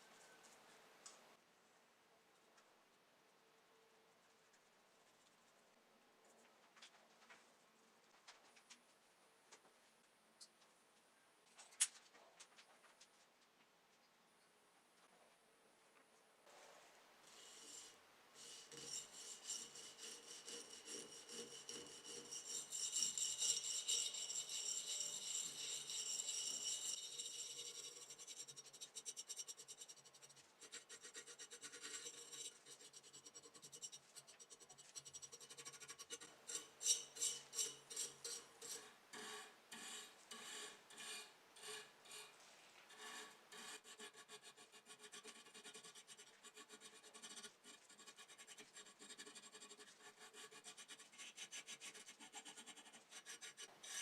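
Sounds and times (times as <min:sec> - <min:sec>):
back-and-forth sanding scrapes: 0:17.2 - 0:54.0.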